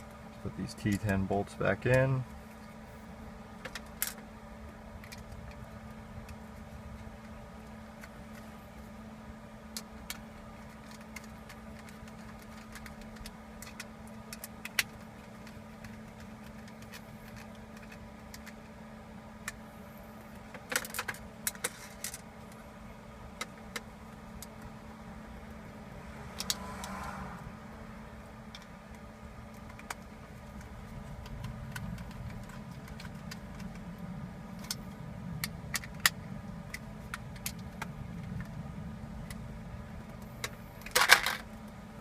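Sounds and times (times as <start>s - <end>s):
steady low hum: 0.0s - 42.0s
small screws clicking and tapping: 9.7s - 18.8s, 28.5s - 34.0s.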